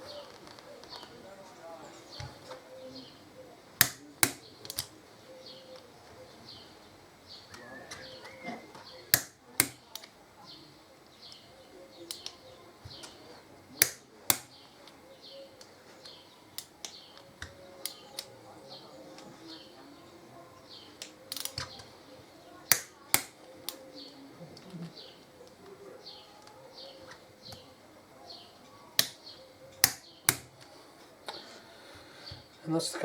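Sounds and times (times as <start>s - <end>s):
torque wrench clicks: 3.8s - 4.9s, 9.1s - 10.2s, 13.8s - 14.5s, 21.0s - 21.8s, 22.7s - 23.8s, 29.8s - 30.5s.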